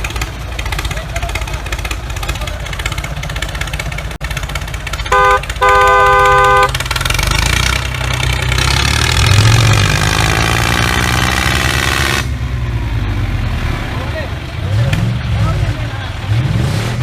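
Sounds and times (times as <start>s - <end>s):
engine running pitch gliding: 0.0s - 17.0s
vehicle horn honking: 5.1s - 6.8s.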